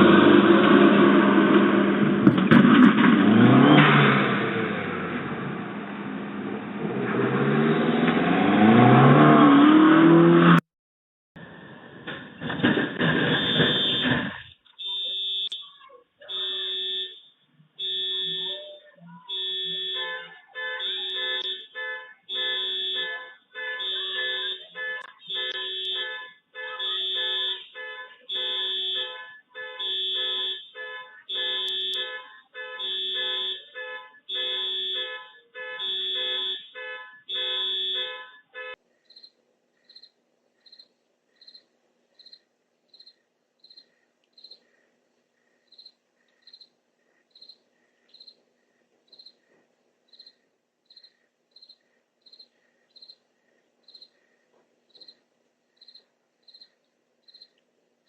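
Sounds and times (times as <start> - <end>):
electronic alarm beeping: 14.8 - 23.2, 23.8 - 32.2, 32.8 - 35.0, 35.8 - 36.8
crickets chirping: 39.1 - 44.8, 45.4 - 49.5, 50.1 - 57.6.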